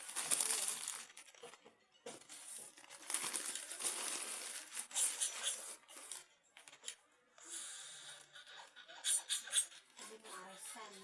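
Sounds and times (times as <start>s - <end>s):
crinkly rustling: 0.0s - 7.0s.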